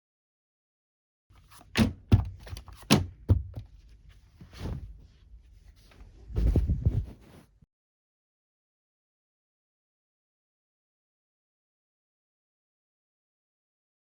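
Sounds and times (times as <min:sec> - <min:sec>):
sharp thuds and knocks: 0:01.6 - 0:03.8.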